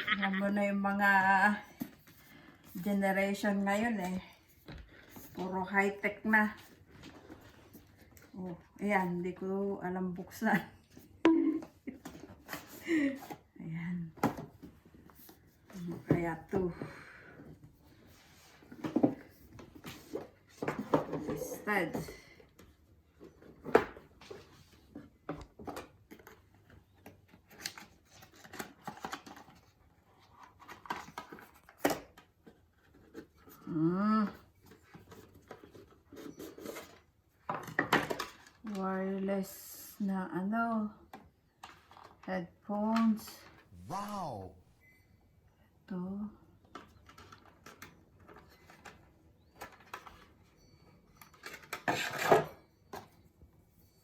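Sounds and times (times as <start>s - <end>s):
packaging rustling and scraping: 26.1s - 33.6s, 34.5s - 38.6s.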